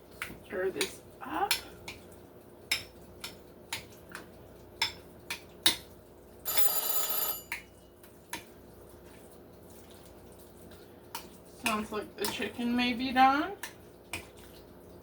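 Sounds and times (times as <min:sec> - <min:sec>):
cooking timer ringing: 0:06.5 - 0:07.8.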